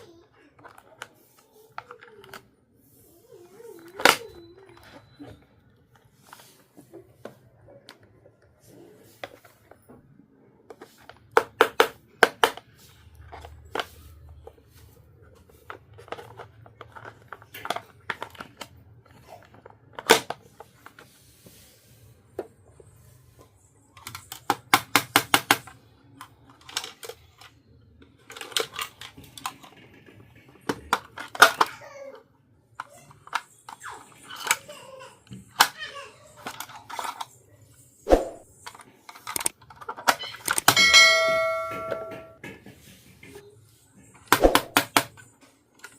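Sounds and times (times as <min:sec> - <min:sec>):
plastic toy pieces clicking: 0:28.1 - 0:29.8.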